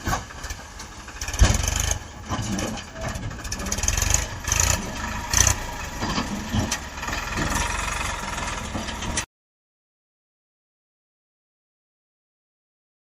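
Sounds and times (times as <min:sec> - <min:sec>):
metal clanks: 0:00.0 - 0:09.2
diesel engine running: 0:00.0 - 0:09.3.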